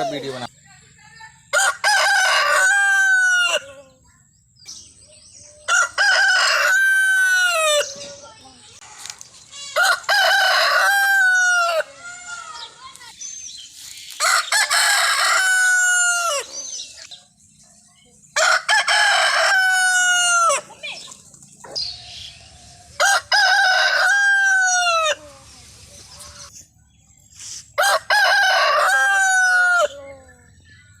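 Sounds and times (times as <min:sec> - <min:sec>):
roosters crowing: 0:01.5 - 0:04.0, 0:05.6 - 0:08.2, 0:09.5 - 0:12.8, 0:14.1 - 0:17.1, 0:18.4 - 0:20.9, 0:21.6 - 0:25.5, 0:27.7 - 0:30.5.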